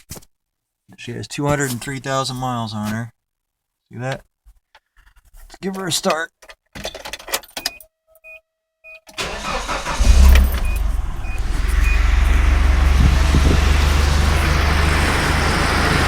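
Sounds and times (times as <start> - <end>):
engine idling: 9.2 - 16.0
starter cranking engine: 9.2 - 16.0
short electronic beeps: 10.3 - 12.4.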